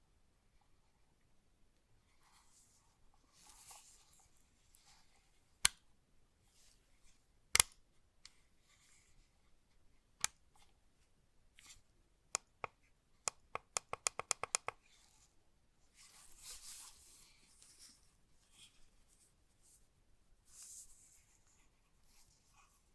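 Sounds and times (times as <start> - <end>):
soft rustle: 2.0 - 5.6, 6.4 - 7.3, 8.3 - 11.9, 14.8 - 22.9
mouse clicks: 7.5 - 8.4, 12.3 - 14.8.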